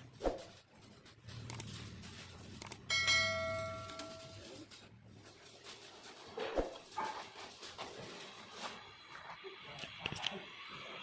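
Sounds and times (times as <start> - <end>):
metal clank ringing: 2.9 - 4.4.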